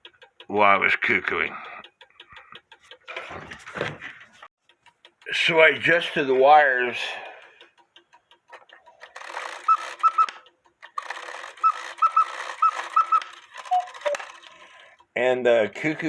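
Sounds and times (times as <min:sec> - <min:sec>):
clock gear train whirring and clicking: 0:00.0 - 0:15.1
cuckoo pipe calls: 0:09.6 - 0:10.4, 0:11.5 - 0:14.5.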